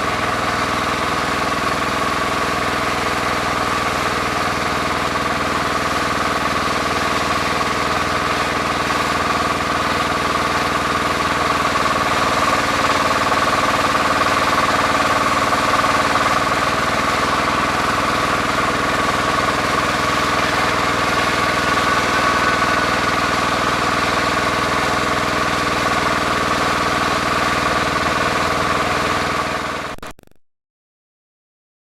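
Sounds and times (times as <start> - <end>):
diesel engine running: 0.0 - 30.0
high whine: 20.4 - 24.3.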